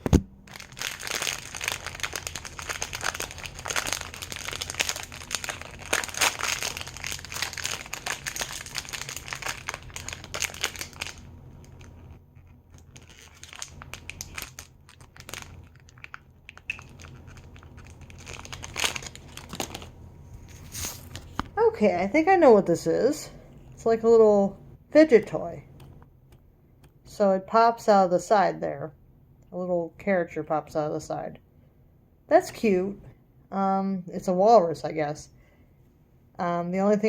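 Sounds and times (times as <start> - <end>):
plastic bag crinkling: 0.4 - 21.5.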